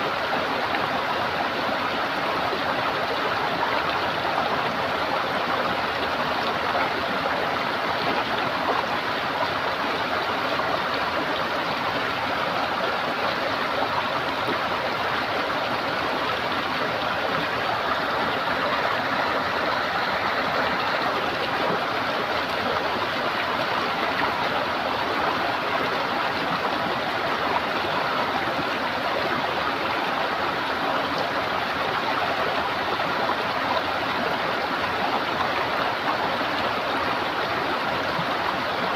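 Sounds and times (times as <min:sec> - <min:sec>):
running water gurgling: 0:00.0 - 0:38.9.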